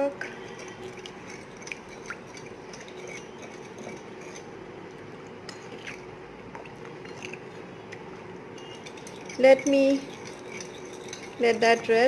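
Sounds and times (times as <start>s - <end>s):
spoon swishing in water: 0.3s - 4.6s, 5.4s - 7.8s, 8.6s - 12.0s
spoon clinking against bowl: 0.4s - 4.5s, 8.5s - 12.0s.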